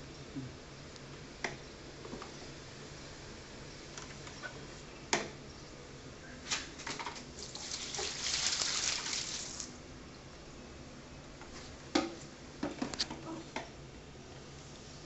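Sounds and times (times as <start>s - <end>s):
water pouring: 7.4s - 9.8s.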